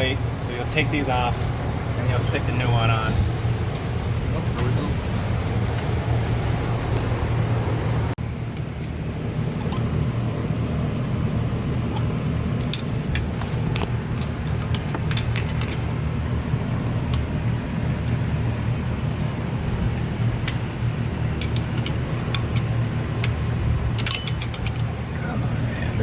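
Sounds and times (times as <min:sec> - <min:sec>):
low rumbling drone: 0:00.0 - 0:26.0
metallic tool clicks: 0:24.0 - 0:24.9.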